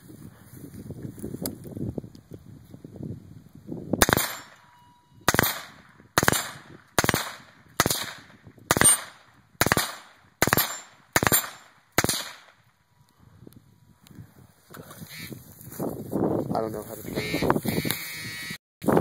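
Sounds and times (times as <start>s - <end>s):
suppressed rifle shots: 4.0s - 4.7s, 5.3s - 12.6s.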